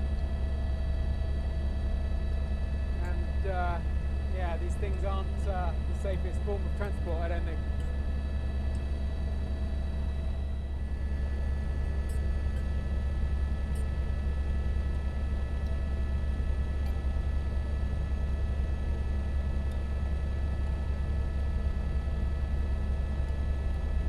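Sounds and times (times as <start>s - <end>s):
helicopter rotor thrum: 0.0s - 14.1s.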